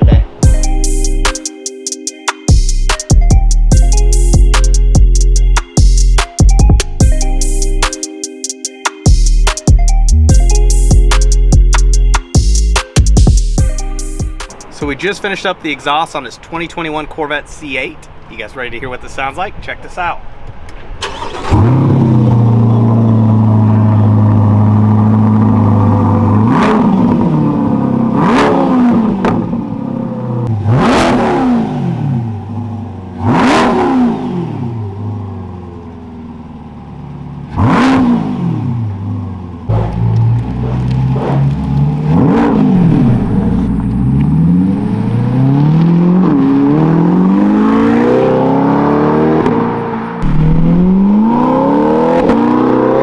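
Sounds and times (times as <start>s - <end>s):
car engine idling and revving: 0.0s - 1.4s, 2.5s - 8.0s, 9.1s - 14.9s, 20.3s - 53.0s
exhaust cracks: 39.7s - 47.3s, 50.2s - 52.7s.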